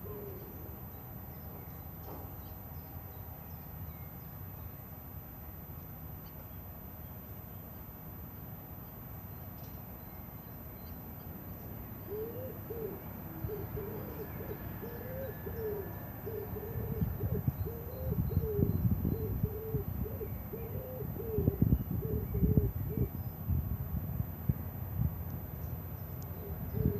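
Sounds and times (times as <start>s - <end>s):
bird hooting and cooing: 0.0s - 0.8s, 11.8s - 23.2s, 26.3s - 26.9s
wind buffeting microphone: 13.3s - 25.5s, 26.4s - 26.9s.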